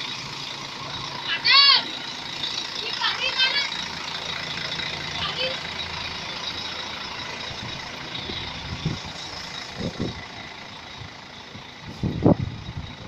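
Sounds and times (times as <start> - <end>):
passing vehicles rumble: 0.0 - 13.0.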